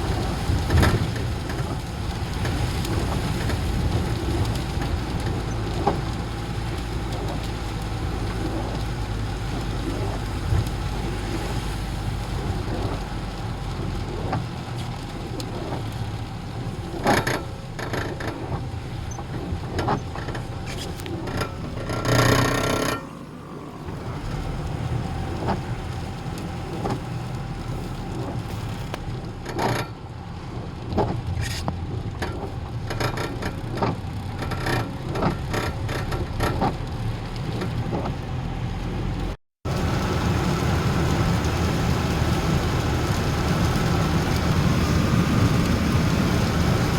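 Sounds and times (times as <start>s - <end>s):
vehicle engines running: 0.0s - 46.9s.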